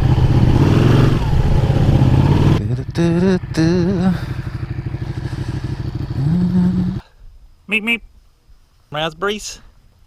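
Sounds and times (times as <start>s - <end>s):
motorcycle engine revving: 0.0s - 7.0s.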